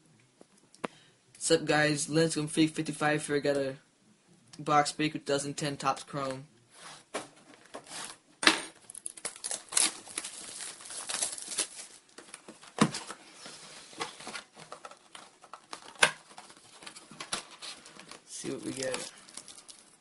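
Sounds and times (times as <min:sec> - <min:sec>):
card wrapper crinkling: 0:08.8 - 0:13.2, 0:14.0 - 0:20.0
wrapper tearing snaps: 0:08.9 - 0:12.1, 0:18.6 - 0:20.0.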